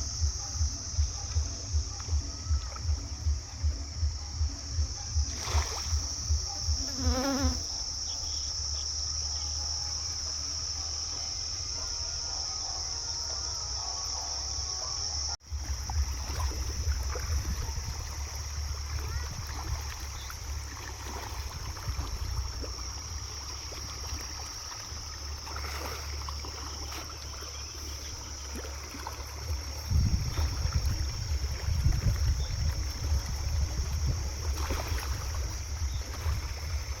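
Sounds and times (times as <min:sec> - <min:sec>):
insects chirring: 0:00.0 - 0:37.0
wind rumble on microphone: 0:15.5 - 0:23.4, 0:29.4 - 0:37.0.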